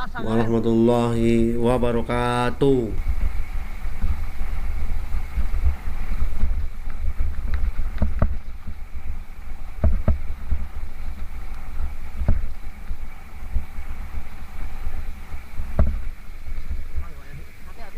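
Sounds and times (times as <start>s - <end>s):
wind buffeting microphone: 0.0s - 17.9s
bike knocking over bumps: 3.1s - 17.2s.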